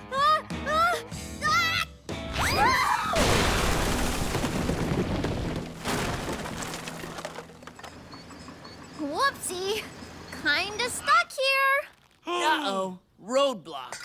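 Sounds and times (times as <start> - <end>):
background music: 0.0 - 3.2
cartoon crash: 2.4 - 5.2.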